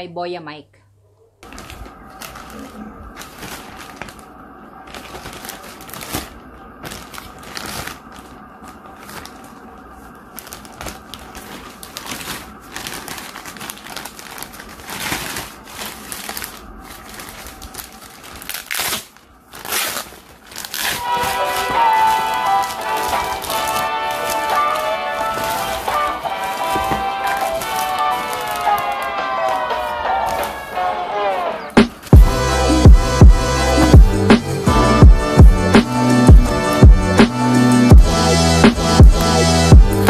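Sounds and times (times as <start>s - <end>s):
crinkling and clicking handling: 1.4s - 30.6s
background music: 21.0s - 40.0s.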